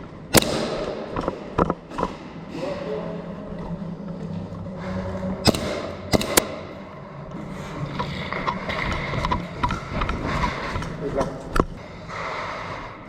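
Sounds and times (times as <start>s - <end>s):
steady low hum: 0.0s - 13.0s
sharp cracks: 0.3s - 2.4s, 5.4s - 6.8s.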